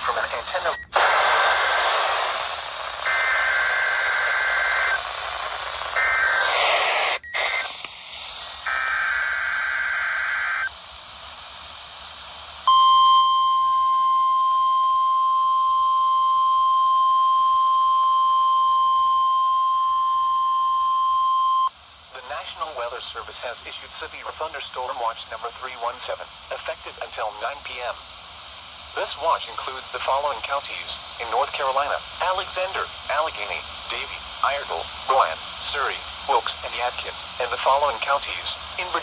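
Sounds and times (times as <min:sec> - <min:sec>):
radio static hiss: 0:00.0 - 0:12.8, 0:21.7 - 0:39.0
warbling digital data bursts: 0:02.0 - 0:02.4, 0:08.3 - 0:10.8.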